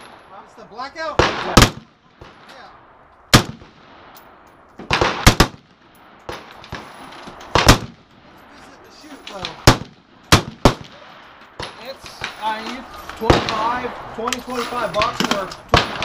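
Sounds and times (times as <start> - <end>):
rifle shots: 1.1 - 2.7, 3.3 - 4.2, 4.8 - 8.3, 9.3 - 12.6, 13.2 - 14.0, 14.9 - 16.0
gunshot echo: 3.3 - 4.2, 4.8 - 6.9, 9.4 - 12.4.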